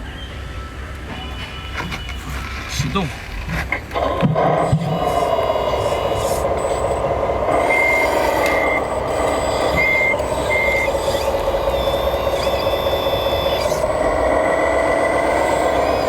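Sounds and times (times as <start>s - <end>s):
toy vehicle engine drone: 2.8s - 16.0s
reversing beeper: 4.0s - 16.0s.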